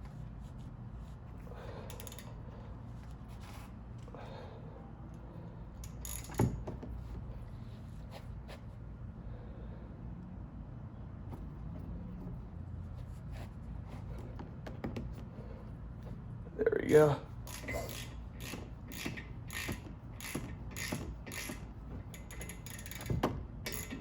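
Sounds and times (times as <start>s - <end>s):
socket wrench clicks: 1.9s - 2.3s, 5.8s - 6.6s, 17.5s - 21.6s, 22.2s - 24.0s.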